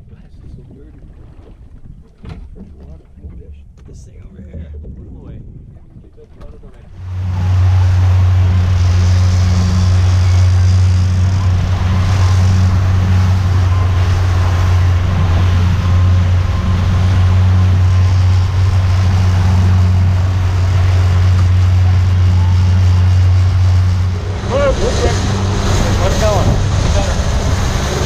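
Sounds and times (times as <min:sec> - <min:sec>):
water noise: 0:00.0 - 0:28.0
wind: 0:00.0 - 0:28.0
boat engine droning: 0:06.5 - 0:28.0.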